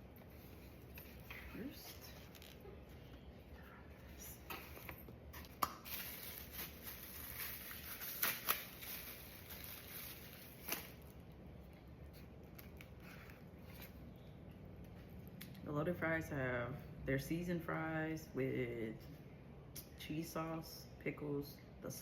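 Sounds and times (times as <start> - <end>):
food packaging rustling: 4.7 - 11.2.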